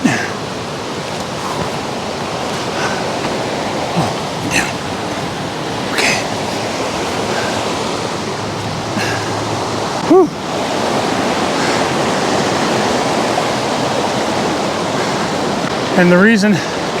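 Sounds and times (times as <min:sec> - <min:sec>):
river rushing: 0:00.0 - 0:17.0.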